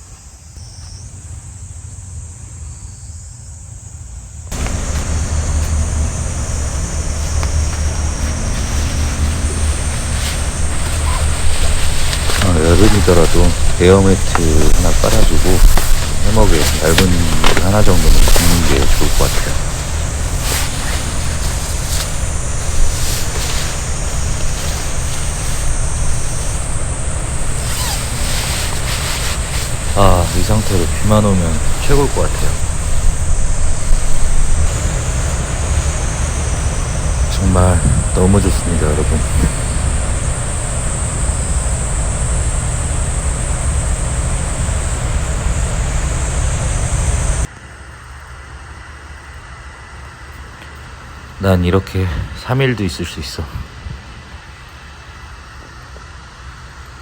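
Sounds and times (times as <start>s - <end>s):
sea waves washing ashore: 4.5s - 47.5s
wind buffeting microphone: 4.5s - 47.5s.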